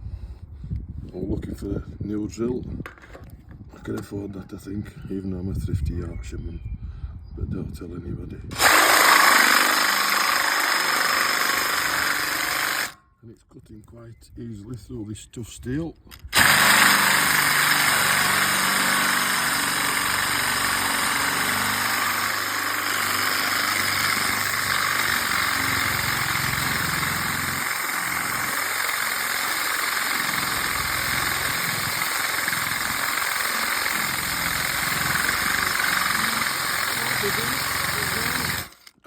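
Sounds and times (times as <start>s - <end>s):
electric drill cutting steel: 8.5s - 13.0s, 16.3s - 39.0s.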